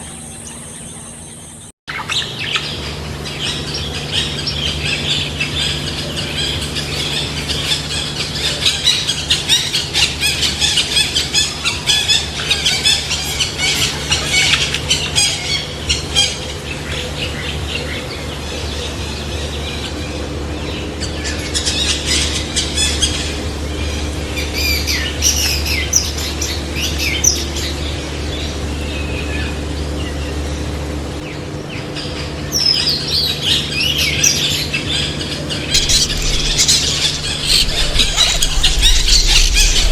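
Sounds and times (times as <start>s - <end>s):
steady low hum: 0.0s - 39.9s
chicks peeping and chirping: 35.7s - 39.9s.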